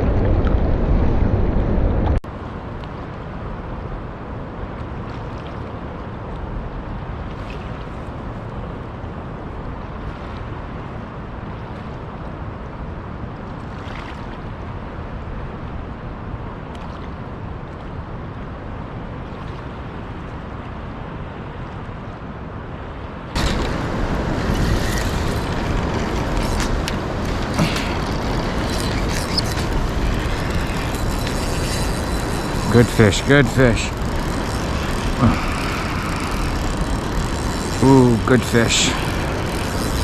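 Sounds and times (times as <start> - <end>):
fast river water rushing: 16.6 - 40.0.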